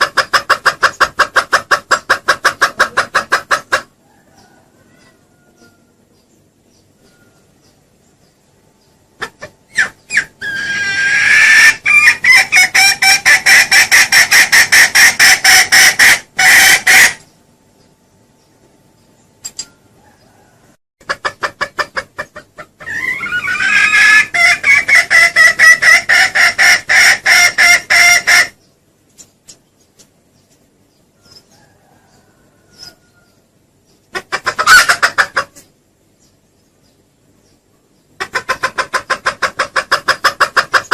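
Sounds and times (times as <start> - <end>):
junglefowl lure call clucking: 0.0 - 5.9, 9.2 - 17.3, 21.0 - 28.6, 34.1 - 35.6.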